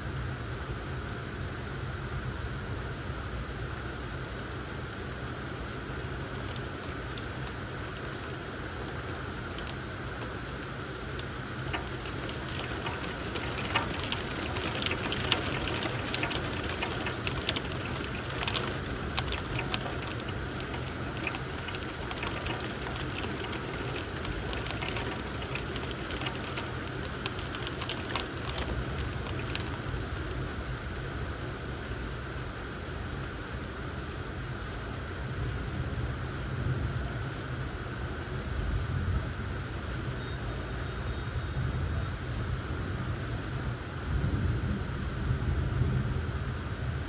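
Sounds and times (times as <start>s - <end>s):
raindrops hitting a surface: 3.1s - 47.0s
heavy rain falling: 6.4s - 32.0s.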